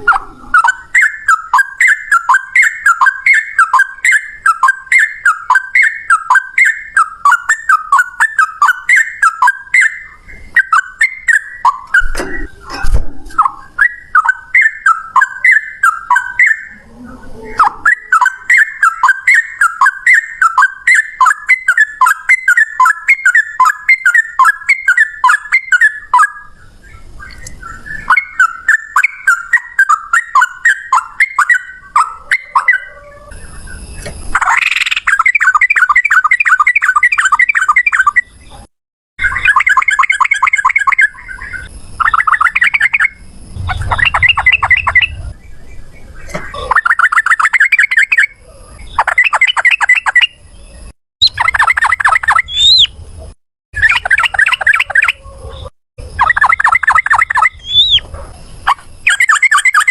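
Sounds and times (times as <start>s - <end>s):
bulbuls singing chattering phrases: 0.0s - 33.0s, 53.8s - 58.1s.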